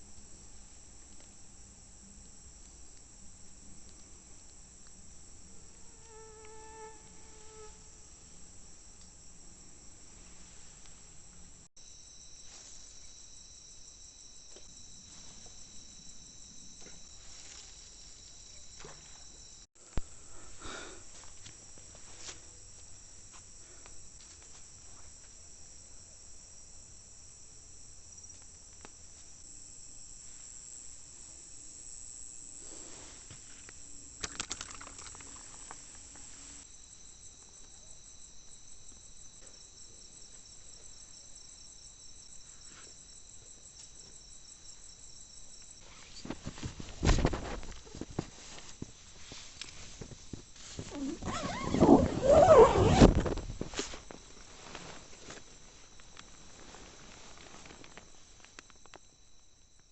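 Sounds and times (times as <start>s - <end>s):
insects shrilling: 50.8s - 55.2s.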